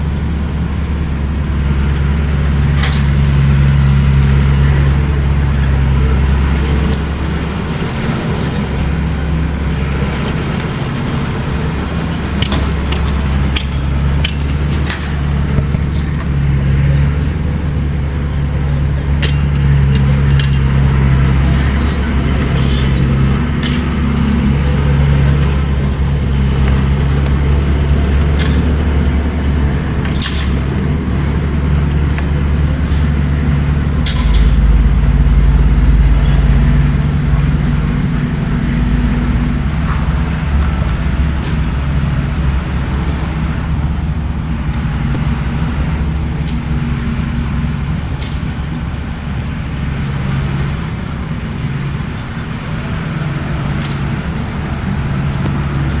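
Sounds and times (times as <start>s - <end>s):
bulldozer diesel engine running: 0.0s - 56.0s
deep low drone: 0.0s - 56.0s
sharp metal clanks: 12.3s - 16.2s, 19.2s - 24.8s, 33.6s - 36.6s.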